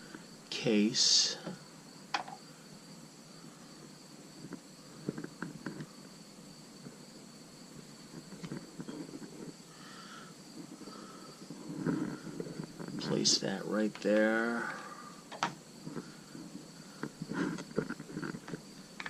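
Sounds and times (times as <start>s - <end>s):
faint high whine: 0.0s - 19.0s
small parts clicking and tapping: 2.1s - 2.4s.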